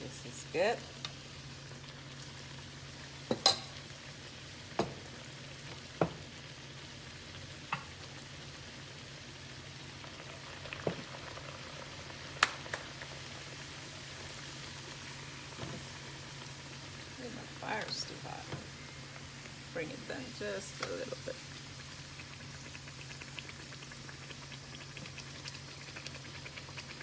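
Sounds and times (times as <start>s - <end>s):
oil sizzling in a pan: 0.0s - 27.0s.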